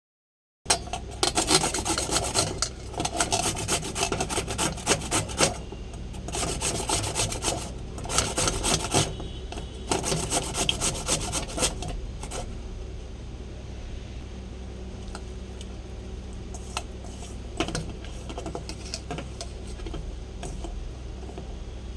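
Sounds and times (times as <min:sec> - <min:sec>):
gourd rasping on hand grater: 0:00.7 - 0:12.5.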